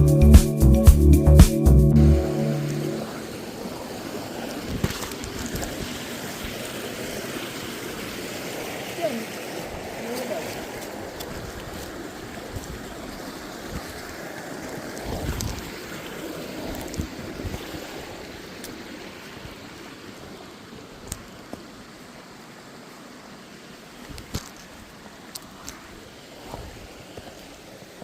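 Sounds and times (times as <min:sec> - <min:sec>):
flowing water rushing: 0:02.0 - 0:28.0
wind buffeting microphone: 0:15.0 - 0:15.8.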